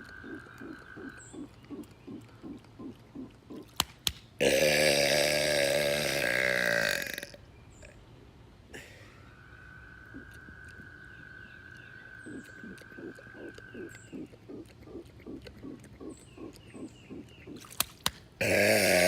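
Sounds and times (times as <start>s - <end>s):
frogs croaking: 0.0s - 3.8s, 8.8s - 17.8s.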